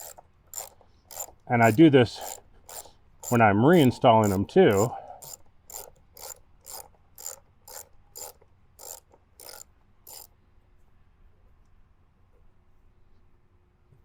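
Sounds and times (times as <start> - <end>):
ratchet wrench clicking: 0.0 - 10.3.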